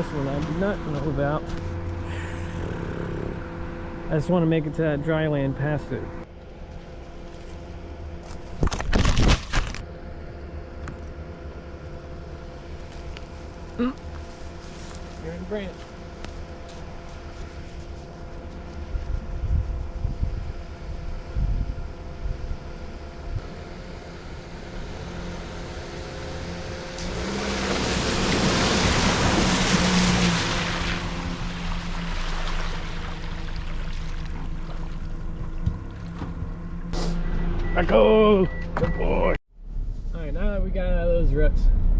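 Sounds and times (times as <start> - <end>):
car engine running: 0.0 - 41.9
water splashing: 26.9 - 36.2.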